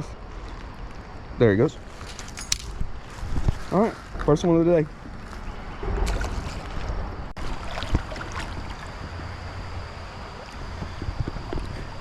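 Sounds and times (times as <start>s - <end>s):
wind buffeting microphone: 2.6s - 12.0s.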